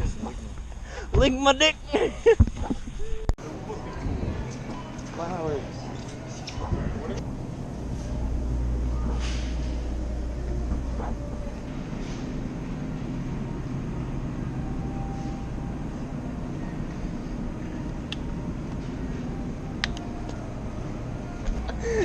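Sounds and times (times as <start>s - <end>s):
road noise: 3.4s - 22.0s
vehicle engine rumble: 3.4s - 22.0s.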